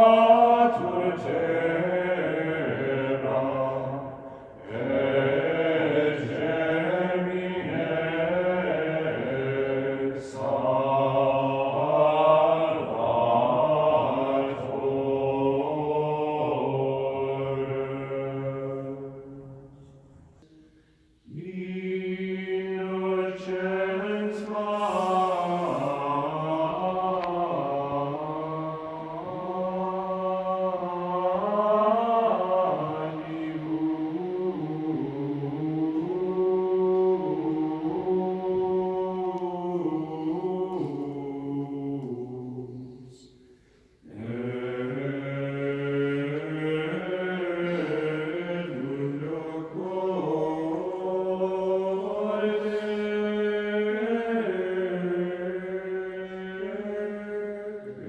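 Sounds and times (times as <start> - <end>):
chant with long-held notes: 0.0 - 58.0.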